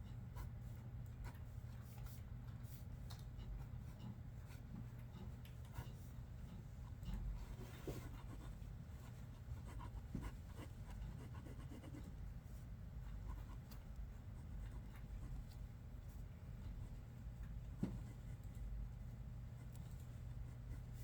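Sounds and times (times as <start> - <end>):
steady low hum: 0.0 - 21.0
pencil scratching on paper: 7.1 - 12.2.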